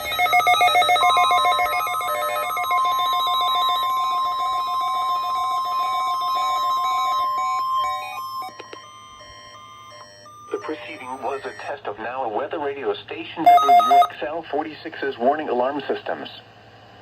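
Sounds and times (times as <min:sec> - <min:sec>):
warbling electronic beeps: 0:00.0 - 0:09.1, 0:13.5 - 0:14.1
steady alarm tone: 0:00.0 - 0:11.8, 0:13.5 - 0:14.1.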